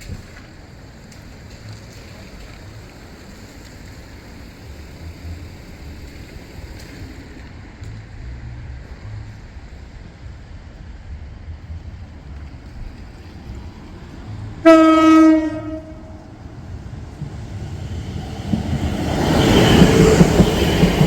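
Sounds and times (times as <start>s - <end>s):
outdoor hiss: 0.0s - 10.9s
wind buffeting microphone: 9.0s - 21.0s.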